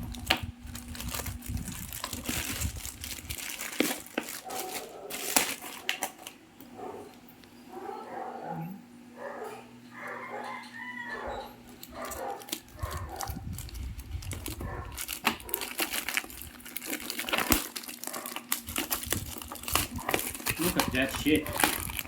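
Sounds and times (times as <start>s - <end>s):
plastic packaging crinkling and tearing: 0.0s - 6.6s, 11.7s - 22.0s.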